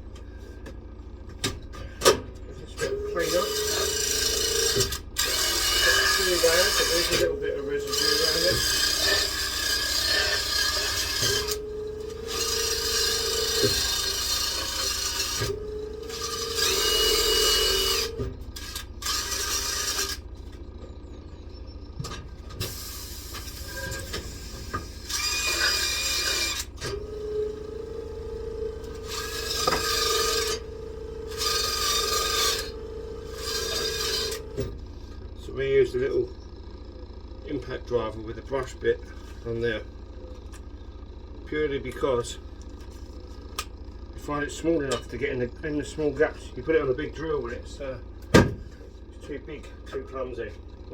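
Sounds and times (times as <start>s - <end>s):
impact driver motor whine: 2.8s - 20.4s, 22.7s - 35.1s
brush scratching metal rim: 28.9s - 34.6s.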